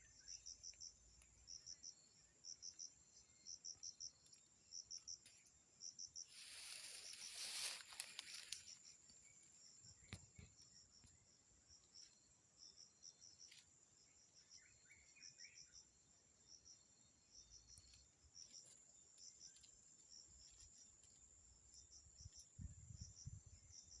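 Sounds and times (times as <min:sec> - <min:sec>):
insect chirps: 0:00.0 - 0:24.0
insect high-pitched whine: 0:05.8 - 0:11.1.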